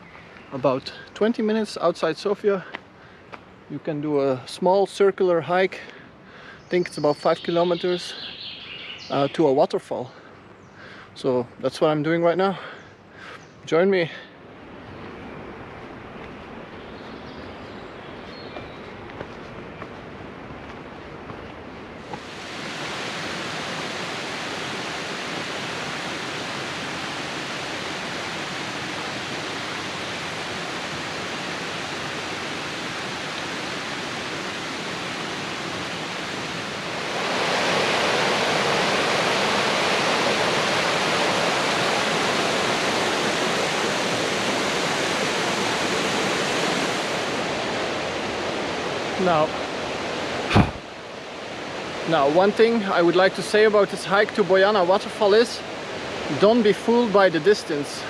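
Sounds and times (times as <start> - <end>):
stream rushing over cascades: 13.9 - 58.0.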